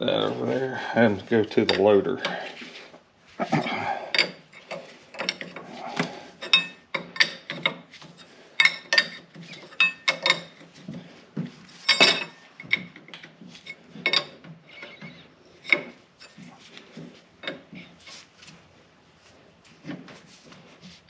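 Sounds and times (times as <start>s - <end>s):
wrenches clanking on metal: 0.0s - 2.6s, 3.6s - 11.0s, 11.6s - 18.2s.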